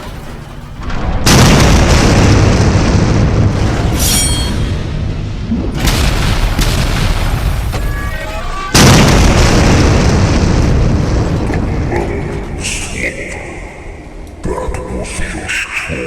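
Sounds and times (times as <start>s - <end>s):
explosions booming and rumbling: 0.0s - 14.7s.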